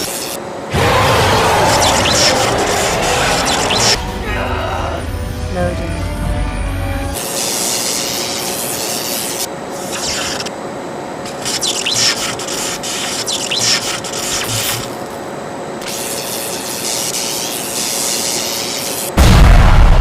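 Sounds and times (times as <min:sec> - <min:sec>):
hissing rushing noise: 0:00.7 - 0:04.3.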